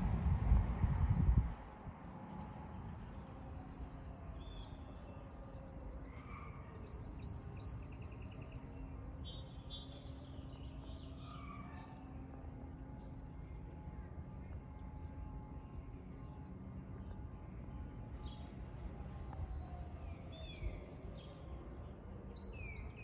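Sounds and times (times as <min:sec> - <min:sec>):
distant fire siren: 0:00.0 - 0:23.0
low outdoor noise: 0:00.0 - 0:23.0
songbirds chirping: 0:02.2 - 0:23.0.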